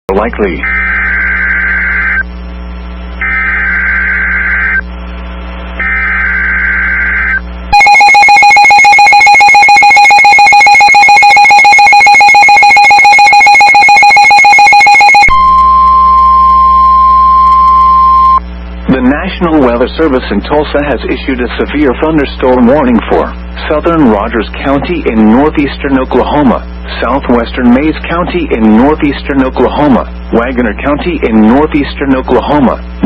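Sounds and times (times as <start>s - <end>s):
steady warning tone: 0.5s - 18.5s
pulsing alarm tone: 5.8s - 18.4s.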